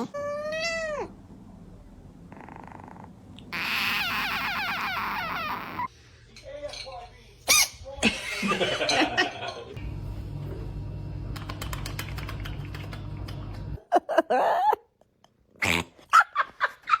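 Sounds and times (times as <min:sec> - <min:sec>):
low hum: 0:09.8 - 0:13.8.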